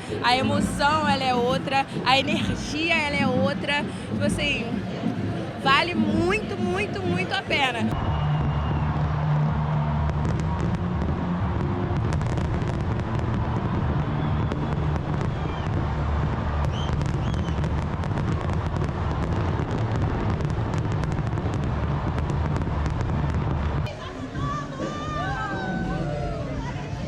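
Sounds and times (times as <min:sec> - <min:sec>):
fireworks bursting and crackling: 0:07.9 - 0:23.9
fireworks whistles: 0:08.0 - 0:09.2, 0:13.4 - 0:21.6.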